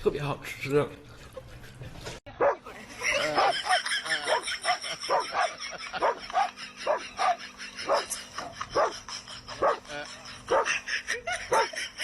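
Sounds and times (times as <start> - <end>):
dog barking and yipping: 2.4 - 2.6, 3.3 - 9.9, 10.5 - 10.9, 11.5 - 11.9.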